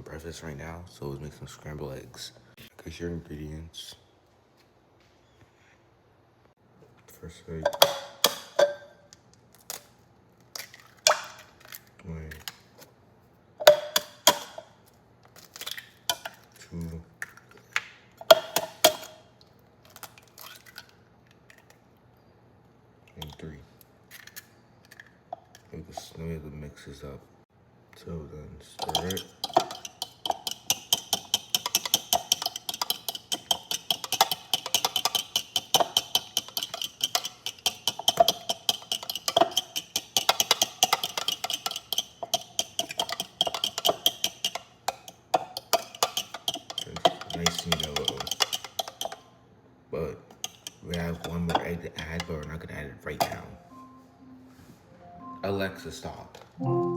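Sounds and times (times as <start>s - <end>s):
egg knocking on bowl rim: 13.6s - 14.6s, 18.2s - 19.2s, 28.8s - 49.2s, 50.3s - 52.4s
shell clicking on bowl: 28.8s - 49.2s, 50.3s - 51.6s.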